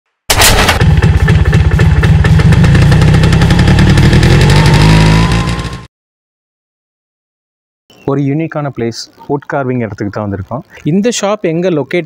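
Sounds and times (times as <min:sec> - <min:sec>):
motorcycle engine running: 0:00.3 - 0:05.9.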